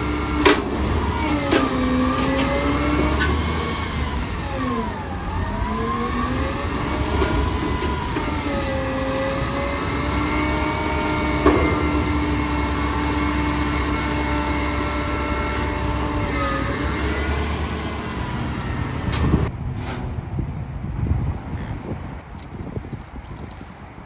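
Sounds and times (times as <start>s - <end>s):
vehicle engine running: 0.0s - 19.5s.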